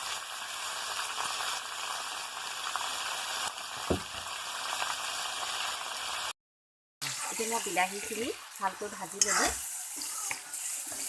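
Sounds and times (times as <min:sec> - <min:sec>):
food sizzling in hot oil: 0:00.0 - 0:06.4, 0:07.0 - 0:11.0
knock: 0:03.8 - 0:04.3.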